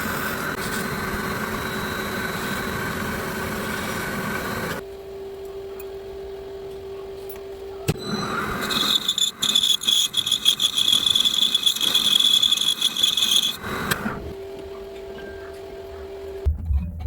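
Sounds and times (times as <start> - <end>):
power tool cutting metal: 8.0 - 14.2.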